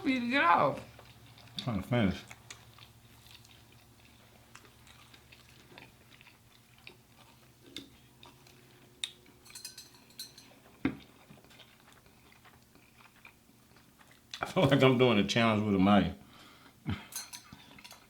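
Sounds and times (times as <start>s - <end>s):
quiet chewing: 0.7s - 14.6s
cutlery clicking on dishes: 9.4s - 10.5s, 17.1s - 18.0s.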